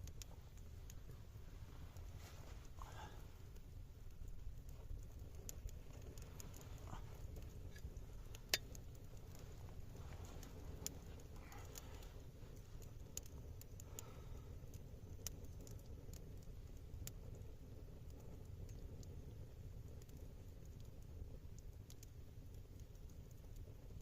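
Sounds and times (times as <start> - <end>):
campfire crackling: 0.0 - 24.0.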